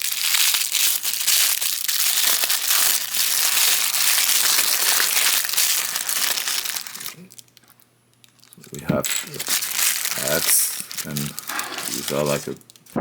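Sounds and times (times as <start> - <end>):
plastic packaging crinkling: 0.0 - 13.0.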